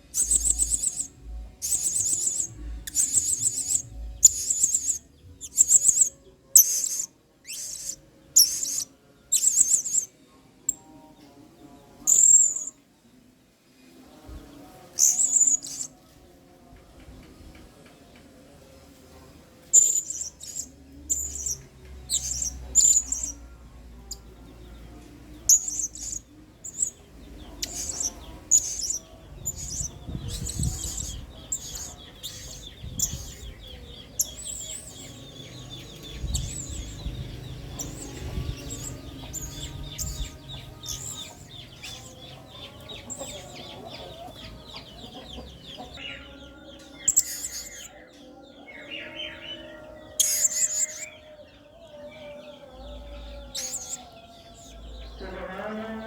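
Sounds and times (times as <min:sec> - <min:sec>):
rapid chattering twitter: 0:00.0 - 0:10.1, 0:12.1 - 0:12.7, 0:15.0 - 0:15.9, 0:19.7 - 0:23.4, 0:25.4 - 0:46.1, 0:47.0 - 0:47.9, 0:50.1 - 0:51.1, 0:53.4 - 0:54.8.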